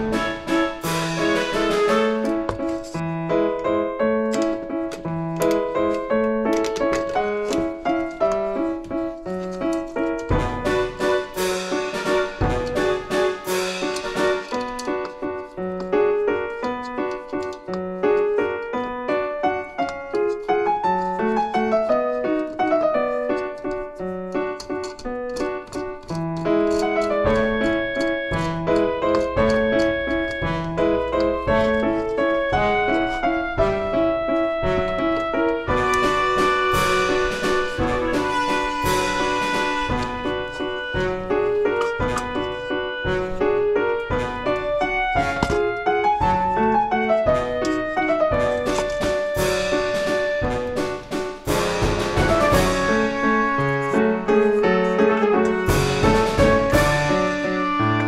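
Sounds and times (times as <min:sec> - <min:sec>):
piano music: 0:00.0 - 0:58.0
keyboard tune: 0:24.6 - 0:58.0.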